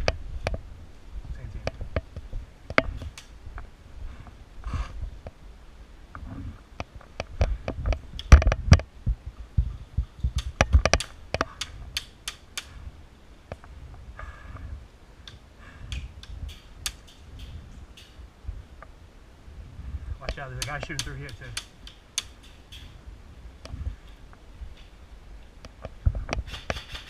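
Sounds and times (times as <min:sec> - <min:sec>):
low thuds: 0:06.1 - 0:12.0.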